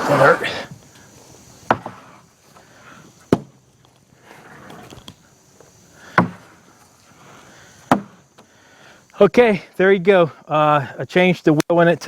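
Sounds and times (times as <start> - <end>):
sharp wooden knocks: 1.7 - 2.0, 6.1 - 6.4, 7.9 - 8.2.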